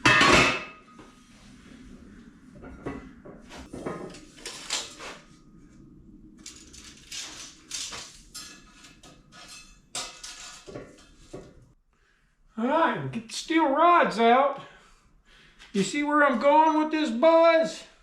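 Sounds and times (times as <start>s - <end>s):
steel pieces clanking: 6.4s - 11.3s
metal scrapes: 6.4s - 11.7s.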